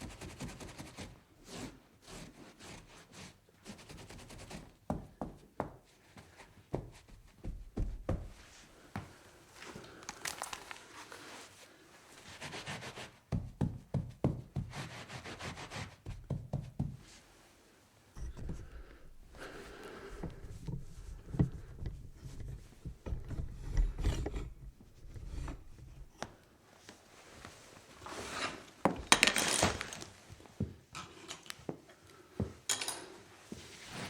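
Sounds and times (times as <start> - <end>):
rubbing and scraping: 18.2 - 26.2, 27.2 - 30.1.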